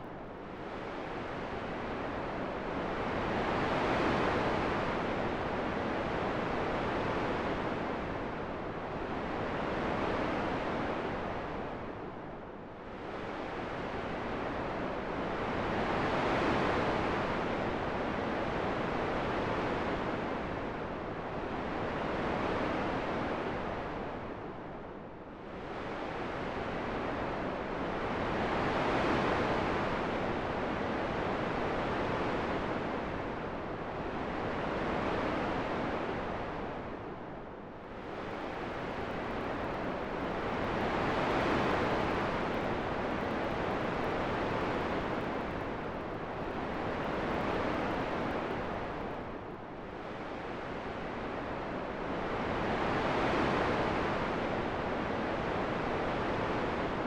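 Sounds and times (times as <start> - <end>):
wind rushing in gusts: 37.9 - 52.7.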